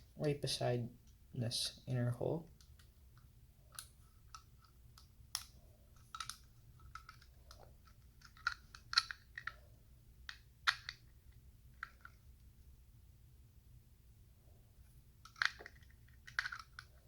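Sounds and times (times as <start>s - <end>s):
plastic parts clicking together: 2.5s - 9.6s, 10.2s - 11.1s, 15.2s - 17.0s.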